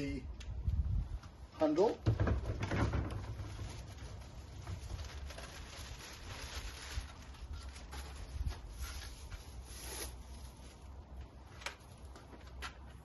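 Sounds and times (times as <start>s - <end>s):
packaging rustling: 3.5s - 10.9s.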